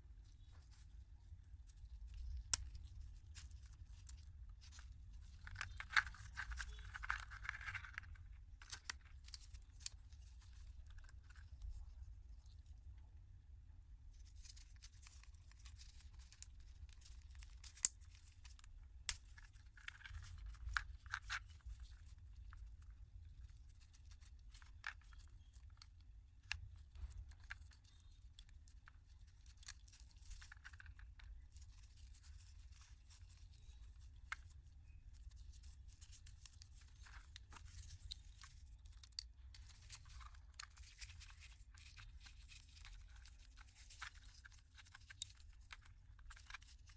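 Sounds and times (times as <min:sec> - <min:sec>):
faint low hum: 0:00.0 - 0:46.9
scraping and rustling: 0:00.3 - 0:12.6.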